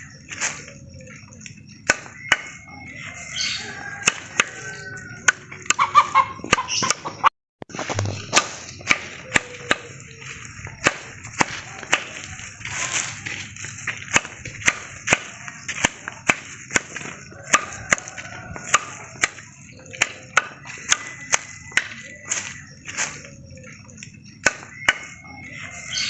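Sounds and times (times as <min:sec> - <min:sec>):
axe chopping tree trunk: 0:01.8 - 0:02.6, 0:04.0 - 0:04.6, 0:07.7 - 0:10.0, 0:10.8 - 0:13.1, 0:13.9 - 0:23.2, 0:24.4 - 0:25.2.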